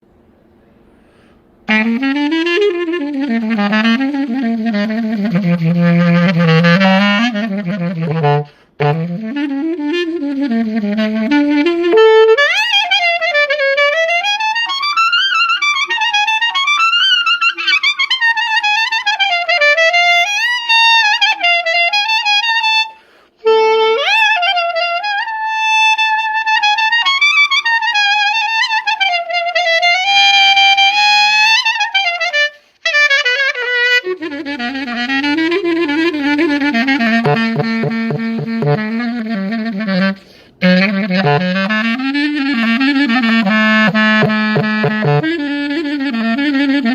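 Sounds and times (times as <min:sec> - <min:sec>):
player breathing: 0:00.6 - 0:01.6, 0:08.5 - 0:08.8, 0:23.0 - 0:23.4, 0:40.2 - 0:40.6
solo saxophone: 0:01.1 - 0:46.9.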